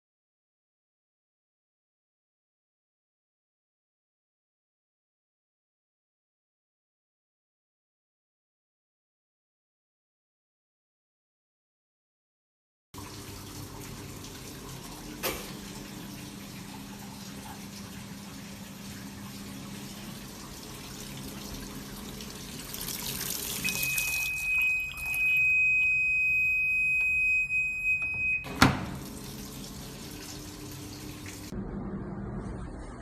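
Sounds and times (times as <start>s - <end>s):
water running into washing machine: 13.0s - 31.6s
low steady hum: 23.6s - 33.0s.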